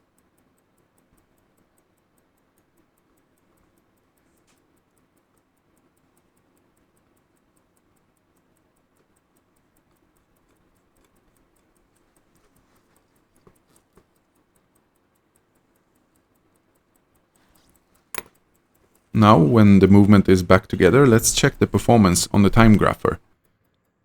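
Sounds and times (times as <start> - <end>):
light clicks: 0.0 - 19.1
pocket watch ticking: 0.0 - 23.2.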